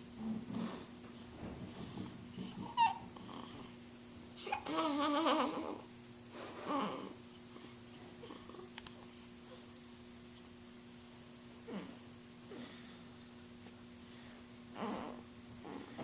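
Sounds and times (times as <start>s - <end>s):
person chuckling in sleep: 6.3s - 7.1s
snoring: 11.7s - 12.9s, 14.8s - 16.0s.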